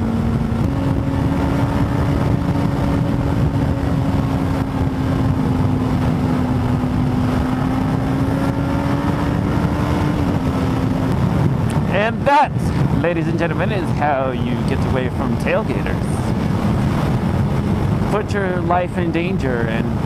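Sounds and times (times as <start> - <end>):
motorcycle engine under throttle: 0.0 - 13.1
wind rumble on microphone: 0.0 - 20.0.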